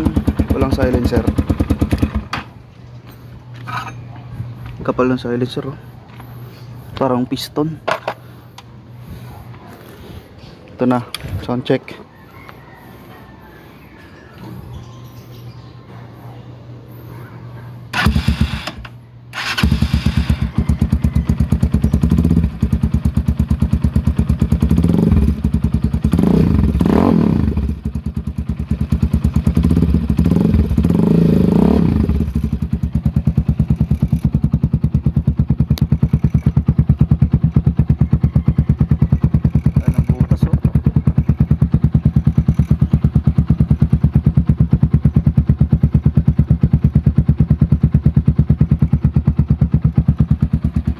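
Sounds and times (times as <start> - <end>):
motorcycle engine revving and idling: 0.0 - 2.7, 17.8 - 50.9.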